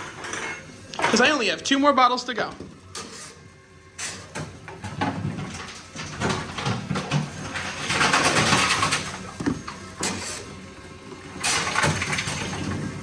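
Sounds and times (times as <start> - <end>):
machine mechanism running: 2.8 - 13.0
plastic bottles clattering: 4.3 - 10.6, 11.3 - 13.0.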